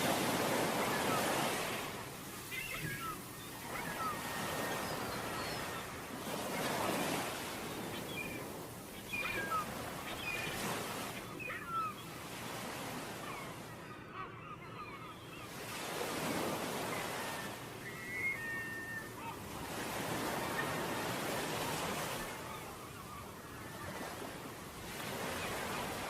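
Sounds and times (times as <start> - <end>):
waves washing onto beach: 0.0 - 11.3
wind: 0.0 - 26.0.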